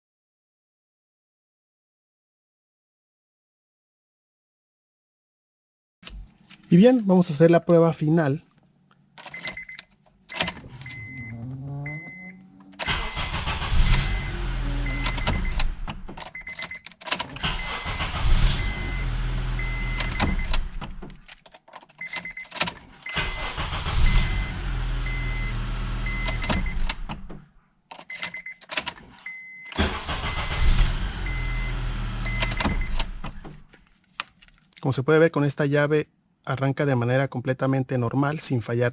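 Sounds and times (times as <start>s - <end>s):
car engine cranking and starting: 9.2s - 33.8s
car electronic chime beeping: 10.8s - 15.8s, 17.4s - 20.7s, 23.1s - 26.9s, 29.3s - 33.2s.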